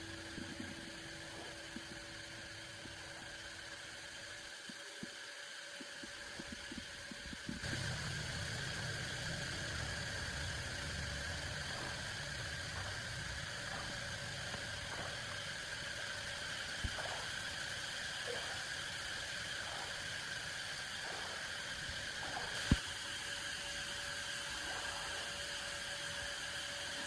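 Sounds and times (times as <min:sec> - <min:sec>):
motor humming and hissing: 0:00.0 - 0:27.0.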